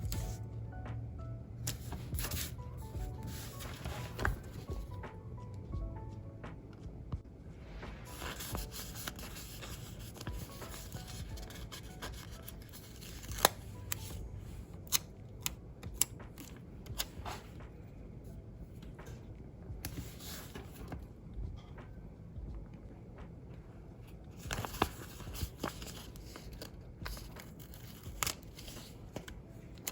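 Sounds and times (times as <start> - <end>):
paper stickers rubbing and peeling: 1.7 - 4.9, 8.1 - 14.2, 24.4 - 29.9.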